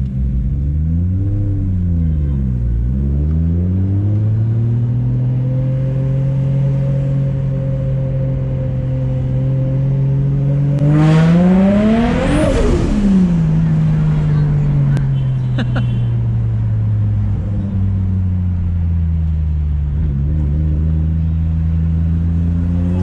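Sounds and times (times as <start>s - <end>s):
turbocharged car engine revving: 0.0s - 15.1s.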